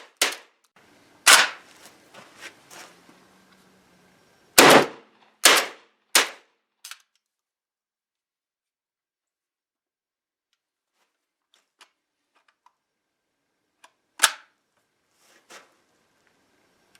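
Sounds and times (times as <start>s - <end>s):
shotgun shots: 1.3s - 1.6s, 4.6s - 6.4s.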